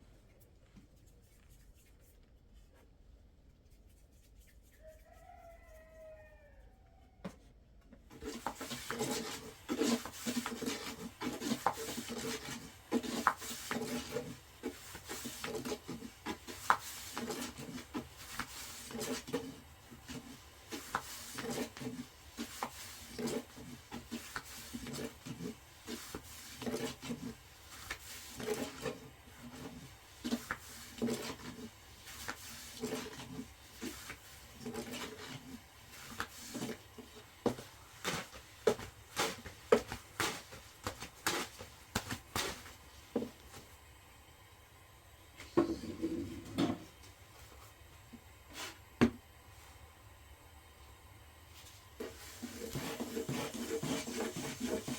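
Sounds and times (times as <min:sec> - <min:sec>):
rhythmic rubbing strokes: 0:52.0 - 0:54.9.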